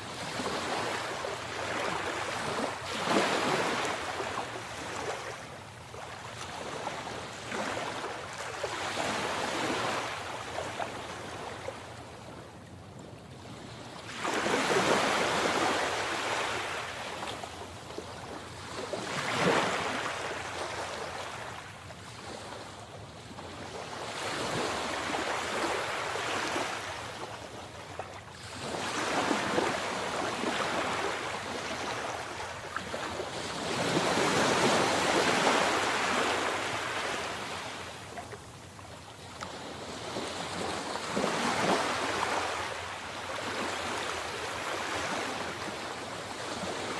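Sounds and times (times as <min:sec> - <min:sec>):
sea waves breaking: 0:00.1 - 0:05.4, 0:28.4 - 0:38.6, 0:39.5 - 0:45.9.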